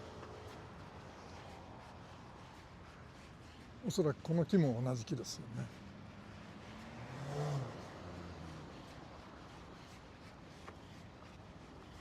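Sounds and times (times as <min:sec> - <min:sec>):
faint outdoor background noise: 0:00.0 - 0:12.0.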